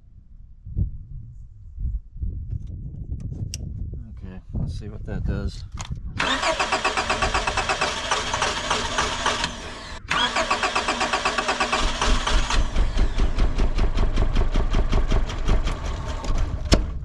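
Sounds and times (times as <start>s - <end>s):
engine firing with low rumble: 6.0s - 17.0s
car engine cranking: 6.2s - 17.0s.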